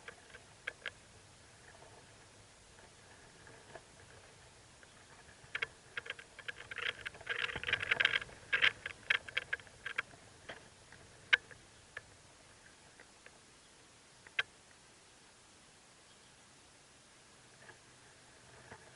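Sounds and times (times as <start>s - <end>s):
nestlings clicking and chirping: 0.0s - 1.0s, 4.8s - 12.1s, 14.2s - 14.5s.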